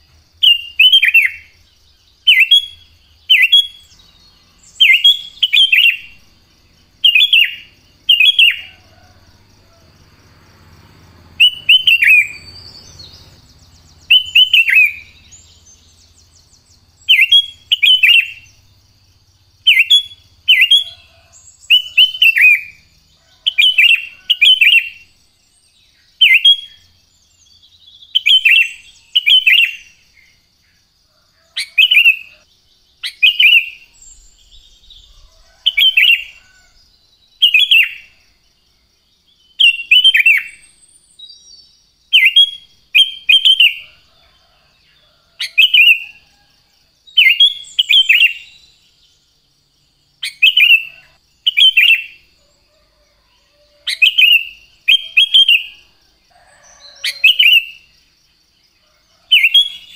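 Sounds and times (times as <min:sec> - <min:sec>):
bulbul singing whistled phrases: 0:00.0 - 0:08.8, 0:11.4 - 0:18.7, 0:19.6 - 0:25.2, 0:26.0 - 0:30.1, 0:33.0 - 0:36.6, 0:39.4 - 0:44.0, 0:47.1 - 0:48.8, 0:50.2 - 0:52.3, 0:53.8 - 0:55.9.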